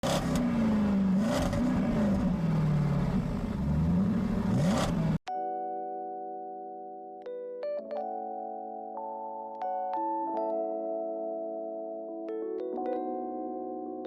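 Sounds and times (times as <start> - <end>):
vehicle driving with droning rush: 0.0 - 5.2
electric piano chord: 5.3 - 14.0.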